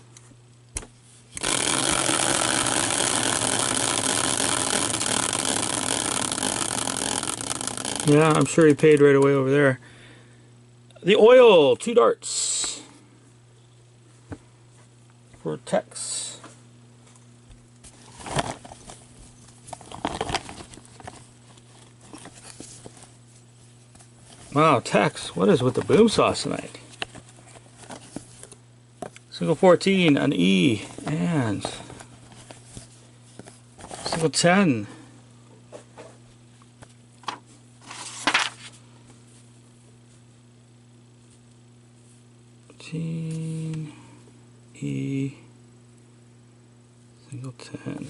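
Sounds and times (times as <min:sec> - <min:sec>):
low electrical hum: 0:00.0 - 0:48.0
clicks and rustling handling: 0:17.0 - 0:24.6.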